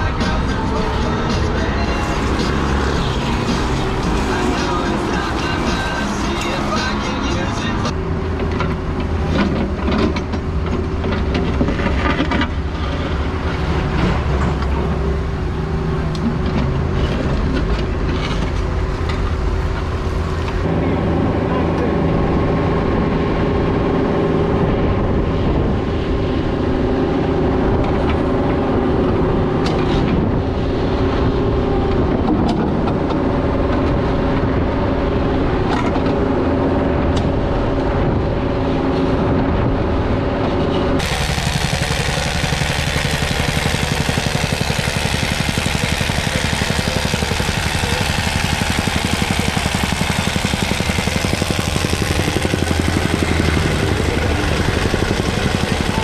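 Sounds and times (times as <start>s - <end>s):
diesel engine running: 0.0s - 21.3s, 40.7s - 56.0s.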